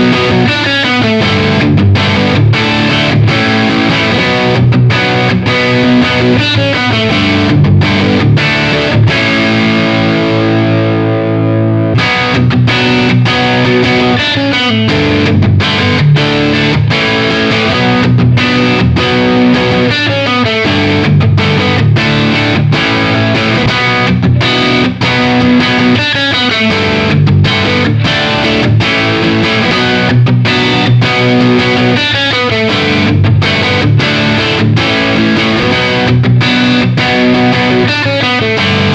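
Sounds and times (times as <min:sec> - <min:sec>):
distorted electric guitar: 0:00.0 - 0:38.9.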